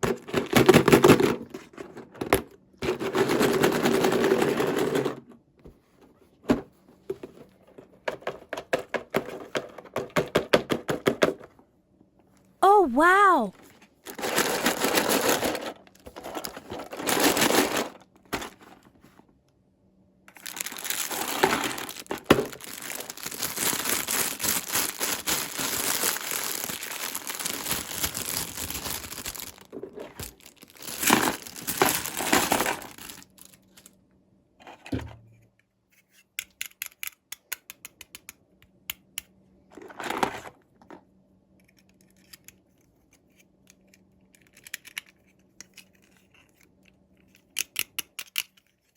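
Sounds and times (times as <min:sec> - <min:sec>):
packaging crinkling and tearing: 0:14.1 - 0:18.6, 0:20.3 - 0:33.9.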